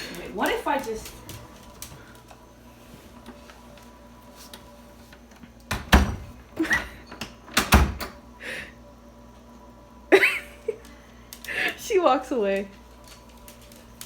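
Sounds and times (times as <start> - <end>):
heavy door thumps: 5.7 - 6.4, 7.6 - 8.1.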